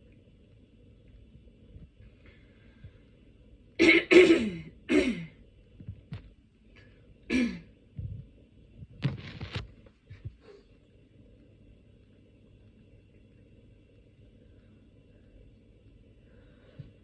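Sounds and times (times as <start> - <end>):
woman clearing throat: 3.8 - 5.4, 7.3 - 7.7
woman coughing: 3.8 - 5.4, 7.3 - 7.7.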